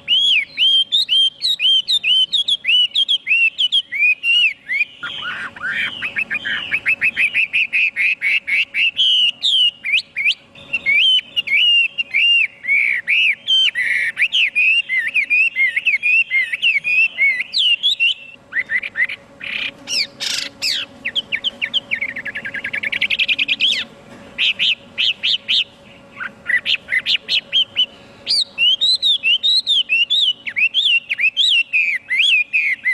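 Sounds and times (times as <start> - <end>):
bird singing whistled notes: 0.0 - 32.9.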